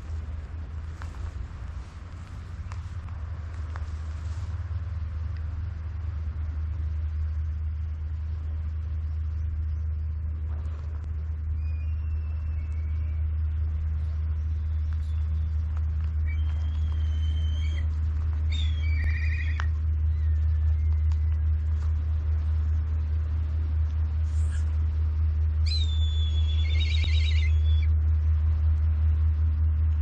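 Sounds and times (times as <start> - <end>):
steady low rumble: 0.0 - 30.0
bird chirps: 11.5 - 13.6, 14.5 - 21.5, 25.6 - 27.9
bird trill: 11.5 - 13.6, 16.2 - 21.4, 25.6 - 27.9.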